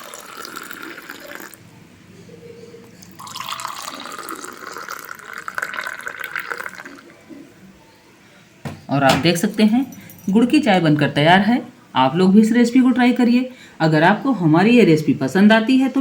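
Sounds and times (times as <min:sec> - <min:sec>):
tea pouring into clay cups: 0:00.0 - 0:01.6, 0:03.0 - 0:07.2.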